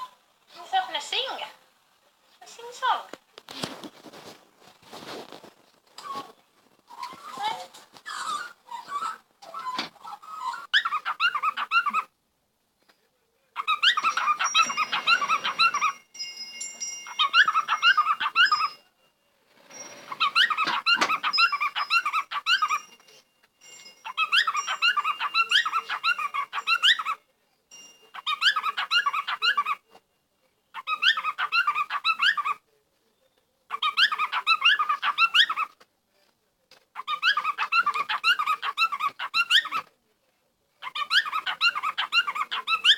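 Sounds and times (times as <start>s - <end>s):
animal squeaking calls: 6.0s - 12.1s, 13.6s - 16.0s, 17.1s - 18.8s, 19.7s - 22.9s, 24.0s - 27.2s, 28.1s - 29.9s, 30.8s - 32.6s, 33.7s - 35.8s, 37.0s - 39.9s, 40.8s - 42.9s.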